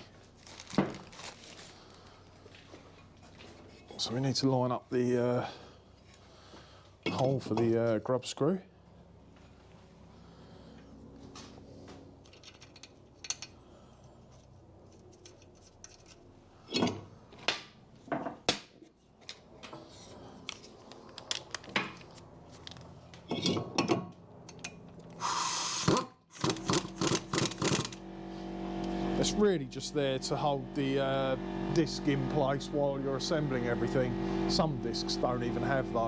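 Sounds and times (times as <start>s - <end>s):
short hissing burst: 25.2s - 25.9s.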